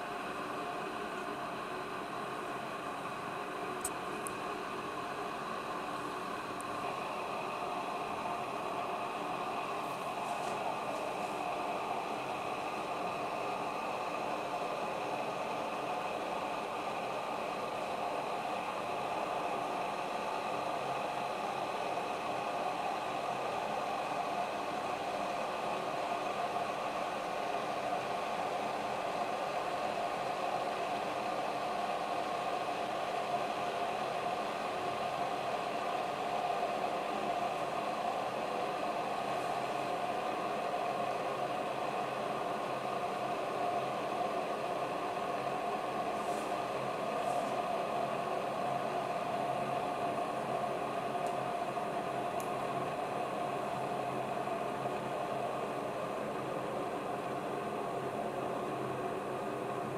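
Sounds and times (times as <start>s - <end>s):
coffee machine whirring hum: 0.0s - 59.9s
coffee machine hiss: 45.6s - 48.0s.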